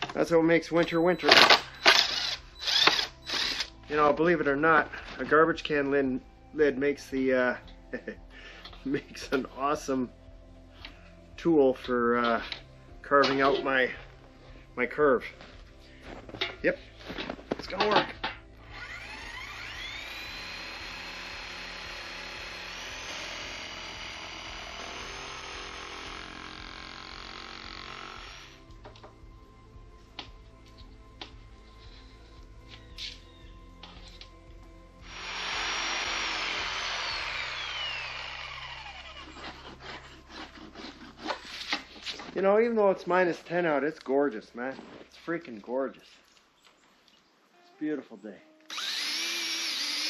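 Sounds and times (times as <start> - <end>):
electric power tool whining: 0.8 - 3.9, 17.1 - 29.0, 35.0 - 40.7, 48.6 - 50.0.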